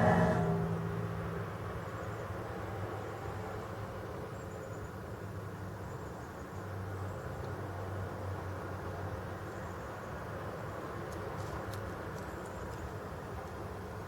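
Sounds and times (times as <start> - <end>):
low droning hum: 0.0 - 1.7.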